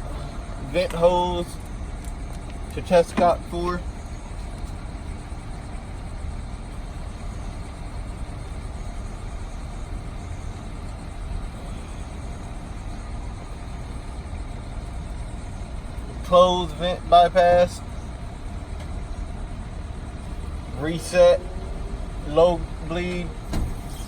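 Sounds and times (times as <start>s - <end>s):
low rumbling: 0.0s - 2.8s, 19.7s - 24.0s.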